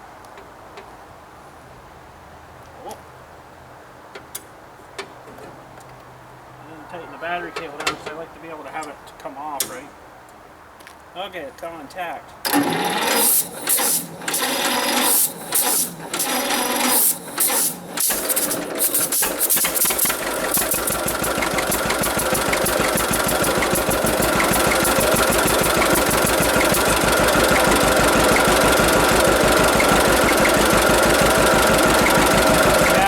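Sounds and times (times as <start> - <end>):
engine turning over and starting: 12.5 - 33.0.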